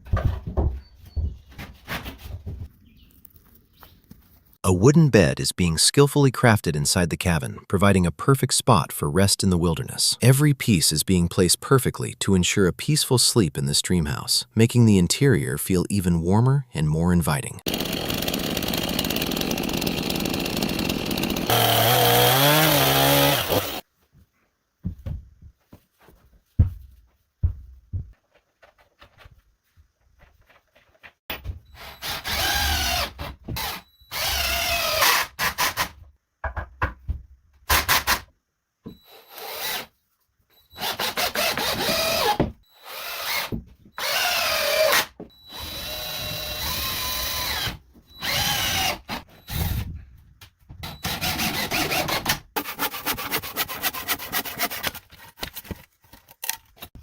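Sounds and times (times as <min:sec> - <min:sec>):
power drill driving into wood: 0:17.7 - 0:23.8, 0:31.8 - 0:35.9, 0:40.8 - 0:49.8, 0:50.8 - 0:52.4.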